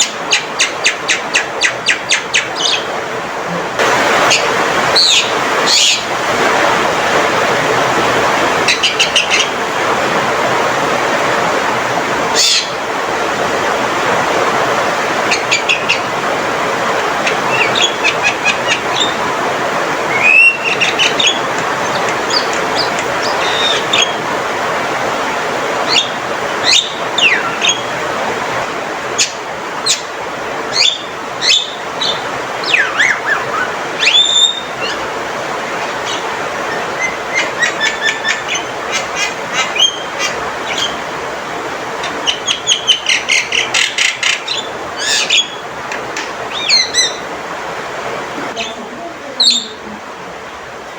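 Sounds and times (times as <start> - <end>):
myna bird calling: 0.0 - 6.2, 8.6 - 9.7, 12.3 - 12.9, 15.1 - 24.3, 25.8 - 28.1, 29.1 - 41.3, 41.9 - 47.3, 48.5 - 50.0
steady rushing hiss: 0.0 - 50.9.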